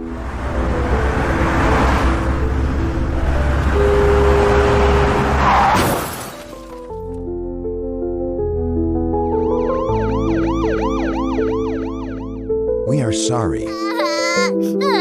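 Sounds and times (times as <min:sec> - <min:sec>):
car speeding by: 0:00.1 - 0:05.8
tyres skidding: 0:00.5 - 0:07.2.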